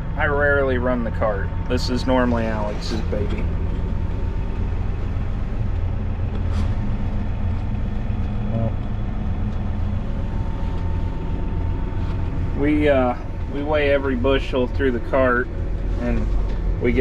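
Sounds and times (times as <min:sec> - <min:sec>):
faint steady whine: 0:00.0 - 0:17.0
tractor engine droning: 0:00.0 - 0:17.0.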